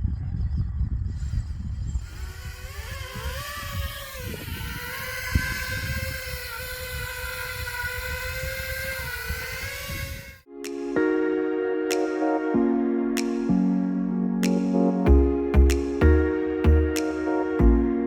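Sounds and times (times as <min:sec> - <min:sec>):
drone motors and propellers whining: 0:00.0 - 0:10.5
wind rumble on microphone: 0:00.0 - 0:10.5.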